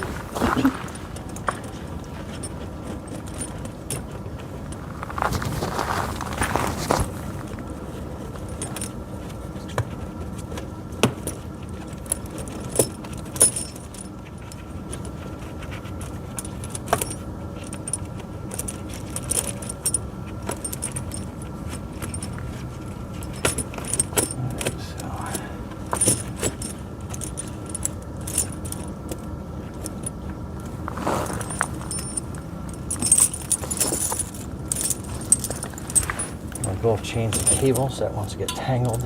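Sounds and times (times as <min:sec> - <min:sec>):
steady low hum: 0:00.0 - 0:39.0
chain links jingling and clinking: 0:12.0 - 0:15.0, 0:16.4 - 0:29.0, 0:30.9 - 0:39.0.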